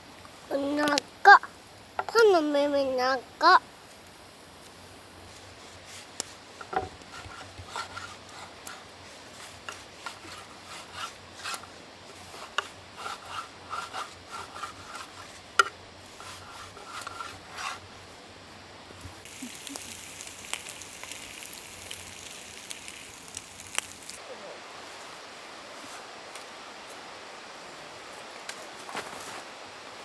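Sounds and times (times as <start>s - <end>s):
scraping strokes: 5.3s - 17.8s.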